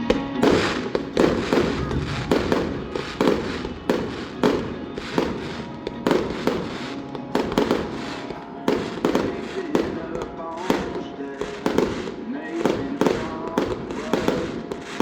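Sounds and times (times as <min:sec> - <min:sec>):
fireworks booming: 0:00.0 - 0:15.0.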